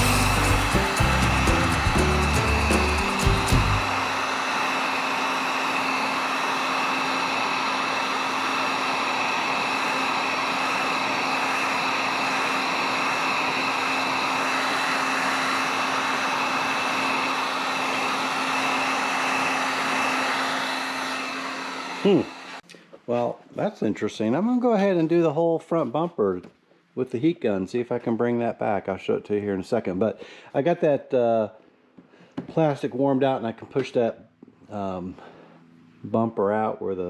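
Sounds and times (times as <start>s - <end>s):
heat gun fan humming: 0.0s - 22.6s.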